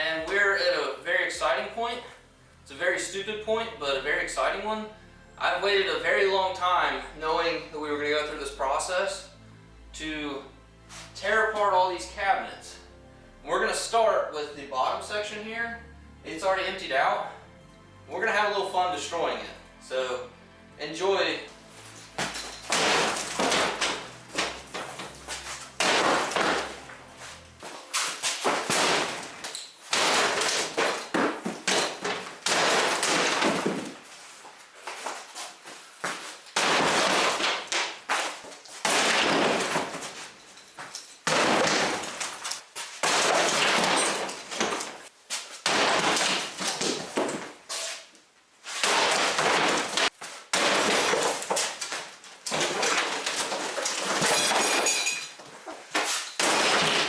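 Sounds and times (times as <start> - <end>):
clattering breaking debris: 21.6 - 34.0, 36.5 - 45.1, 45.7 - 47.4, 48.8 - 55.4, 56.0 - 57.0.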